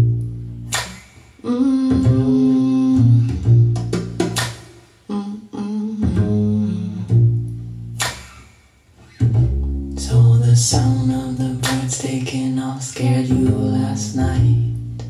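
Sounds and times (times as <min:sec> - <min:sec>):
low bass line: 0:00.0 - 0:00.8, 0:01.9 - 0:04.4, 0:06.0 - 0:08.2, 0:09.2 - 0:15.0
plucked guitar notes: 0:09.2 - 0:11.6.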